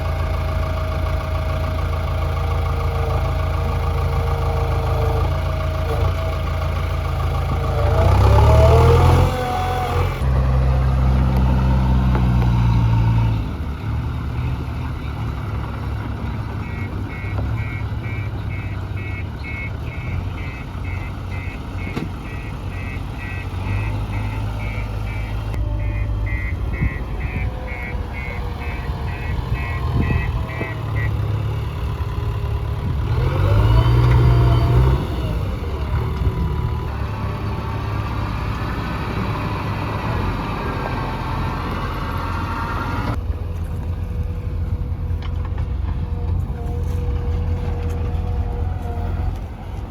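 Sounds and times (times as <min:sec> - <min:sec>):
diesel engine revving: 0:00.0 - 0:49.9
reversing alarm beeping: 0:16.3 - 0:32.3.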